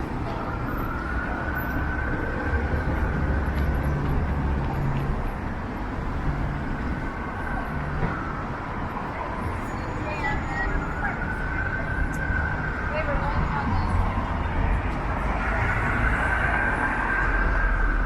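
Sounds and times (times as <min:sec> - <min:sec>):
city street traffic: 0:00.0 - 0:18.0
distant siren wailing: 0:00.2 - 0:04.4, 0:06.6 - 0:13.7, 0:15.2 - 0:18.0.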